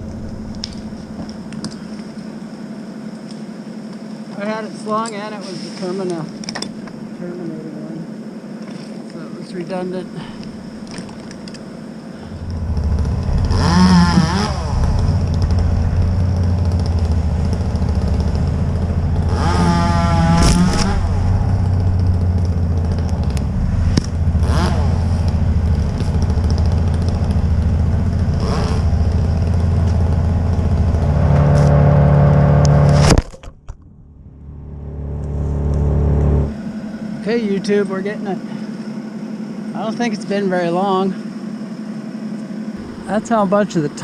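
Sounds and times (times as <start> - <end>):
engine revving: 12.2 - 33.2, 33.8 - 38.1, 42.6 - 44.0.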